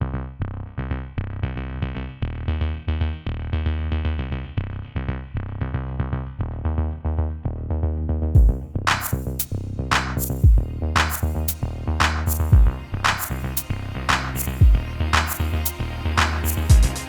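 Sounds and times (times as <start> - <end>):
electronic synthesizer music with beat: 8.4 - 17.0.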